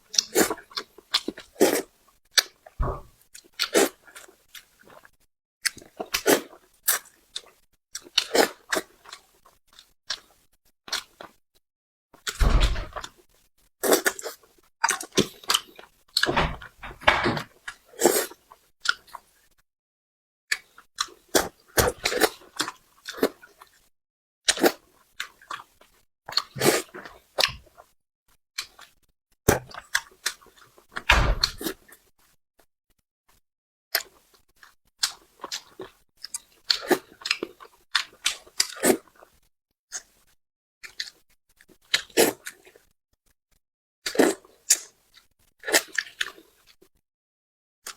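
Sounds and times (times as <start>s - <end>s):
wet chewing and biting: 3.4s - 11.4s, 13.8s - 16.3s, 34.0s - 42.9s, 44.0s - 46.8s.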